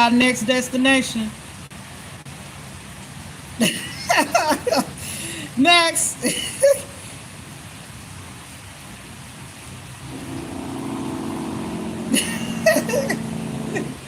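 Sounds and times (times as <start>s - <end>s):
rain hissing: 0.0s - 14.0s
vehicle engine humming: 10.0s - 14.0s.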